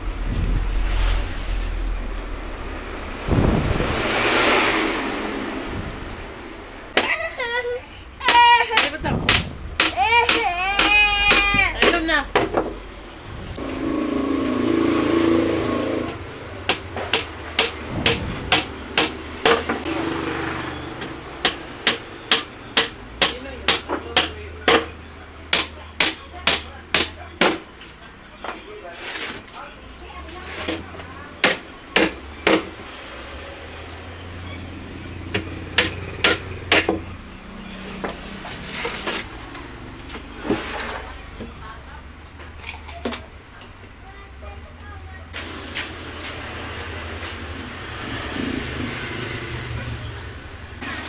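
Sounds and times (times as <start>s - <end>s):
steady droning hum: 0.0s - 4.0s.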